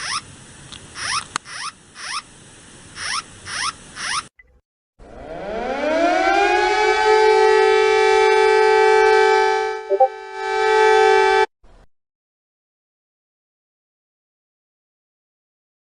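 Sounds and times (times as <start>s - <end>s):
warning siren winding up: 5.0s - 11.2s.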